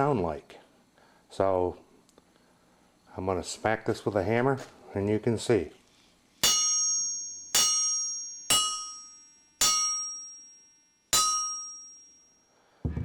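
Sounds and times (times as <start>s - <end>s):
hammer striking anvil: 6.4s - 12.4s.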